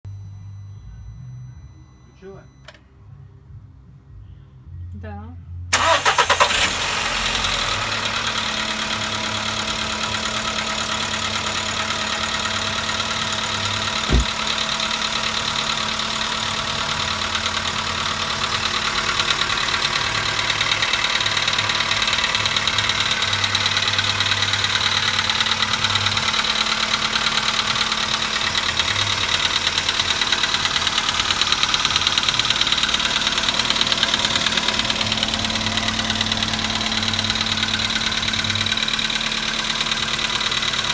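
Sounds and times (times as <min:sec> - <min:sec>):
car engine idling with knock: 0:05.7 - 0:40.9
short thump: 0:14.0 - 0:14.4.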